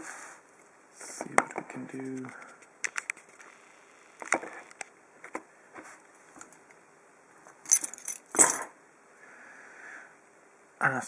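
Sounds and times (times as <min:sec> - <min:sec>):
small metal tools clinking: 0:07.6 - 0:08.7.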